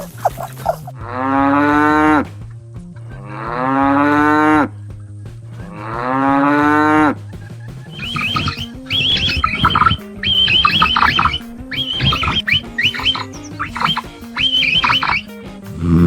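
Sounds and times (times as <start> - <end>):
cow mooing: 1.0 - 2.2, 3.2 - 4.7, 5.7 - 7.1.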